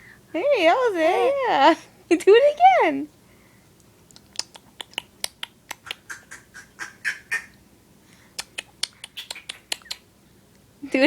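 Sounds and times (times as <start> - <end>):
small sharp clicks and smacks: 3.8 - 6.1, 8.4 - 10.6.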